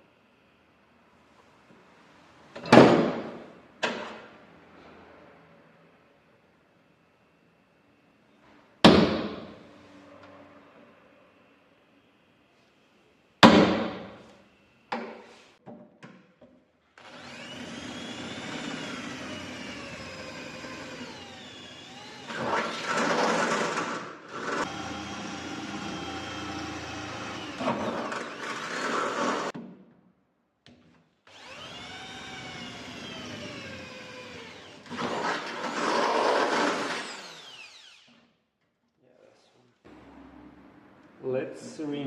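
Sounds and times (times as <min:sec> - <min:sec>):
drill cutting through metal: 0:17.0 - 0:29.5, 0:31.3 - 0:38.2
electric drill whining: 0:17.0 - 0:29.5, 0:31.3 - 0:38.2.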